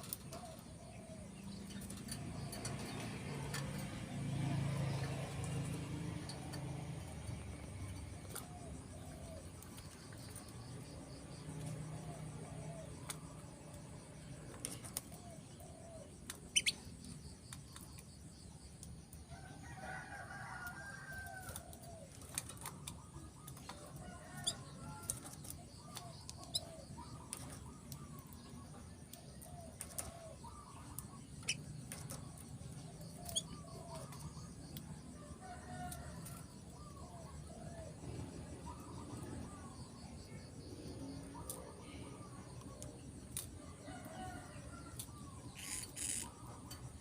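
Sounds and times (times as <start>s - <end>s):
canary chirps: 16.4s - 17.2s, 30.8s - 34.2s, 45.5s - 46.4s.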